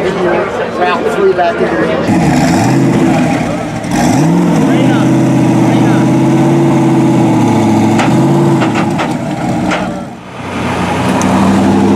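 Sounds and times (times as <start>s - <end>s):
car engine running: 2.1s - 11.9s
sharp knocks: 7.9s - 10.0s.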